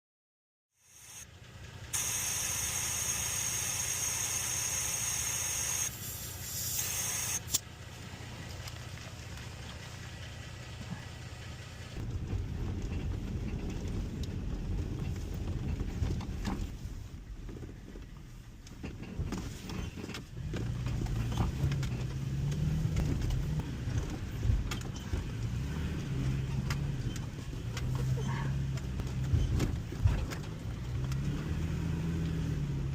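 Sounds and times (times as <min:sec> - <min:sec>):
off-road vehicle engine running: 0:00.8 - 0:32.9.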